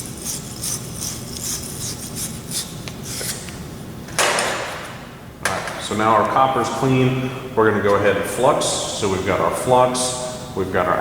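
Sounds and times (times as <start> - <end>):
wire brush scrubbing copper fitting: 0.0 - 3.5.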